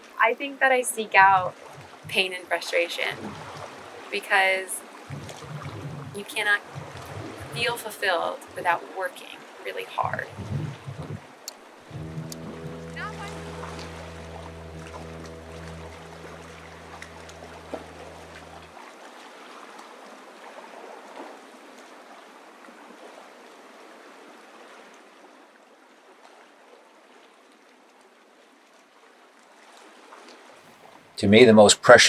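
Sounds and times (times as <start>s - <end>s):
low steady hum: 0.0s - 18.8s
water rushing and splashing: 0.0s - 27.9s.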